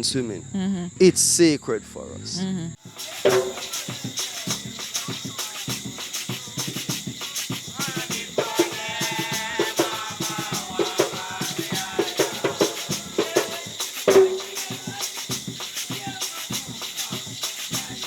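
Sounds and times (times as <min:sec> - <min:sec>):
drums: 0:02.8 - 0:18.0
shakers rattling: 0:02.8 - 0:18.0
person singing: 0:07.7 - 0:15.3.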